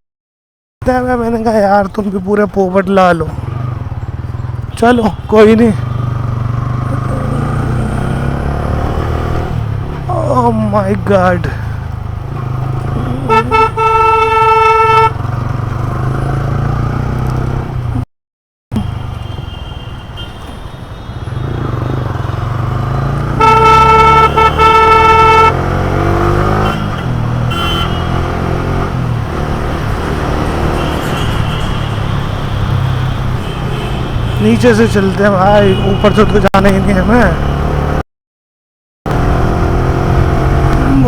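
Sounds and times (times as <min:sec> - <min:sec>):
traffic engine rumble: 0:00.8 - 0:18.0, 0:18.7 - 0:38.0
vehicle horns honking: 0:04.7 - 0:06.4, 0:12.9 - 0:15.4, 0:18.8 - 0:22.0, 0:23.0 - 0:28.9, 0:30.5 - 0:37.8.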